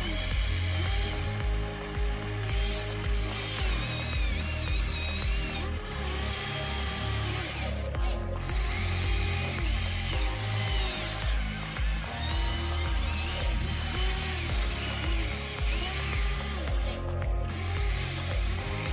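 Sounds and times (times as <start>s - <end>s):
small electric motors whining: 0.0s - 18.9s.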